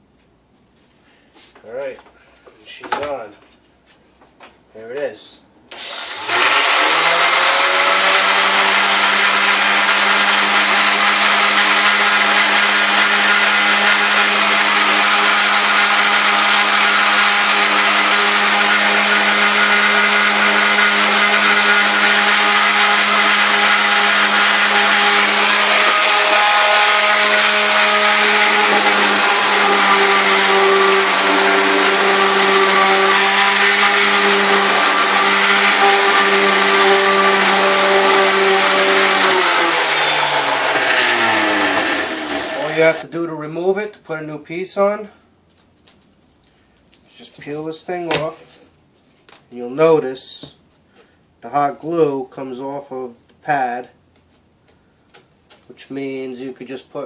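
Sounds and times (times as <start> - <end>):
orbital sander whining: 5.7 - 43.0.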